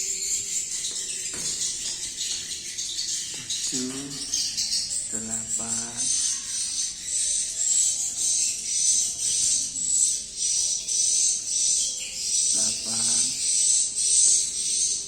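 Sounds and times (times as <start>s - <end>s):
swiftlets twittering: 12.5s - 13.6s.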